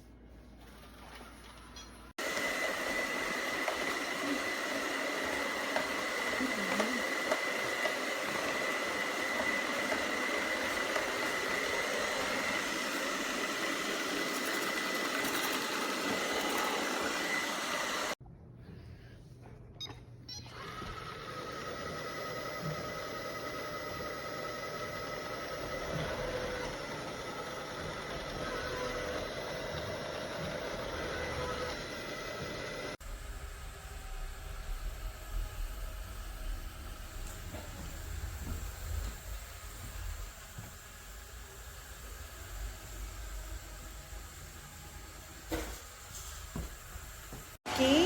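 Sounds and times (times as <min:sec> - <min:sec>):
robot vacuum whirring: 0:02.2 - 0:18.2, 0:20.4 - 0:33.4.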